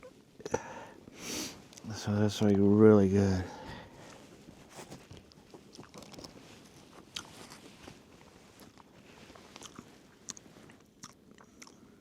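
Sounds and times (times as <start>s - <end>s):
person chewing food: 4.9s - 12.0s.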